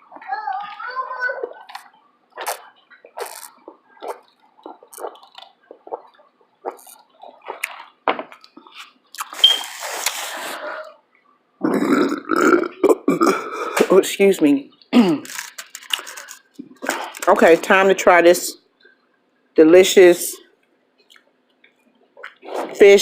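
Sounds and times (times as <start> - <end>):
chewing and mouth smacks: 1.4 - 9.4, 15.3 - 17.3, 20.6 - 22.7
loud burp: 11.6 - 13.5.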